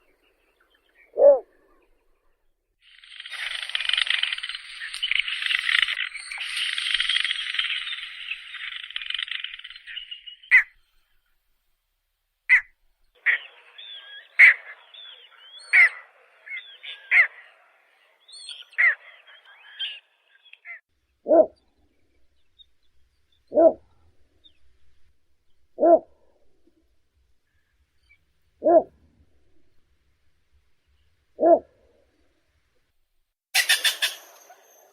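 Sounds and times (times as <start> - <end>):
short low bird calls: 0.9 - 1.9
frog chorus: 2.9 - 10.7, 12.5 - 20.7
sharp downslurred bird calls: 2.9 - 10.8, 12.5 - 21.6, 33.6 - 34.9.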